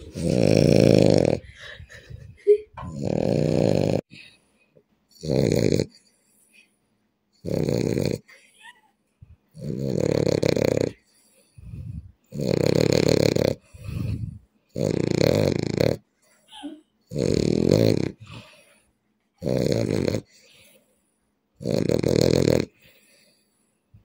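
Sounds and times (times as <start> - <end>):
man snoring: 0.1 - 1.5, 2.9 - 4.2, 5.2 - 6.0, 7.4 - 8.3, 9.6 - 11.0, 11.8 - 16.0, 17.1 - 18.4, 19.4 - 20.3, 21.6 - 23.0.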